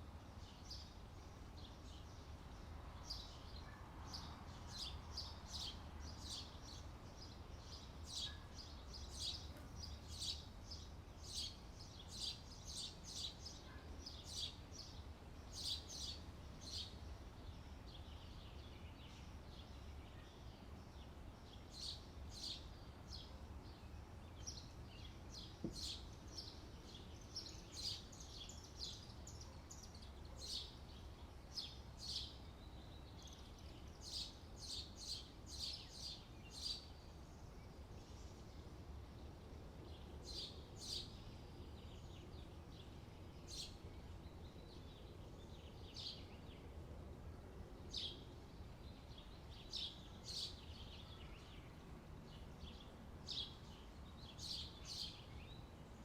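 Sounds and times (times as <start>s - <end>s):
small birds chirping: 0.0s - 56.0s.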